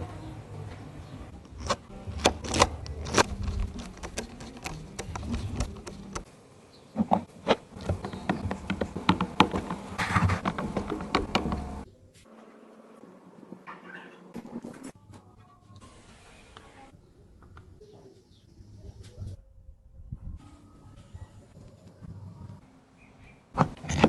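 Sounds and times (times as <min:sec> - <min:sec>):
sharp clicks and knocks: 0:01.4 - 0:06.3, 0:07.0 - 0:11.9.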